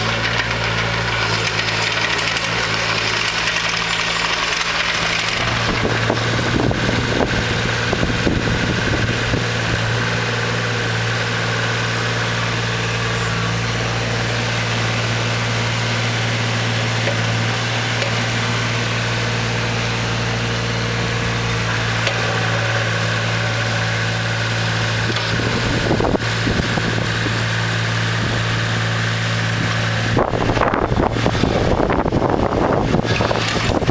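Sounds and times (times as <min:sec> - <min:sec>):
diesel engine idling: 0:00.0 - 0:33.9.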